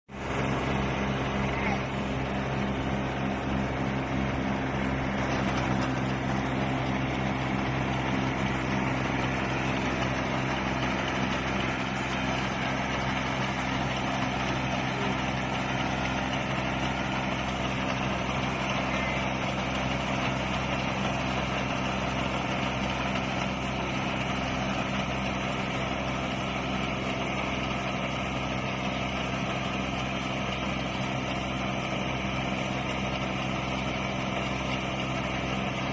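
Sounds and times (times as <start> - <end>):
harvester engine drone: 0.1 - 35.9
even mechanical noise: 0.2 - 20.2.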